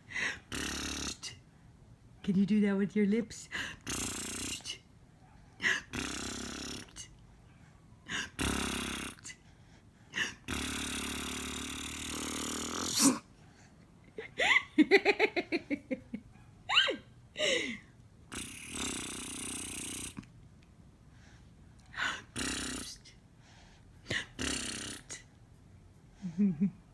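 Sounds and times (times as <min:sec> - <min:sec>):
lip raspberries: 0:18.3 - 0:20.4.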